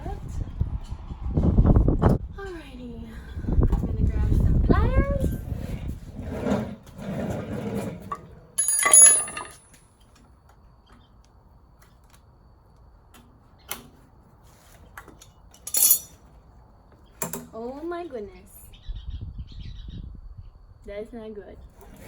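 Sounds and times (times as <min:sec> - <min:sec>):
loud ringing metal clank: 0:08.6 - 0:09.6
rummaging through metal tools: 0:08.6 - 0:09.7, 0:15.6 - 0:16.2.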